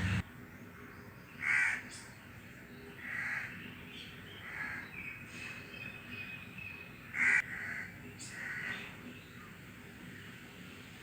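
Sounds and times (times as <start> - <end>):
wind rushing: 0.0 - 0.2
crows cawing: 1.4 - 1.8, 3.0 - 3.5, 7.2 - 8.7.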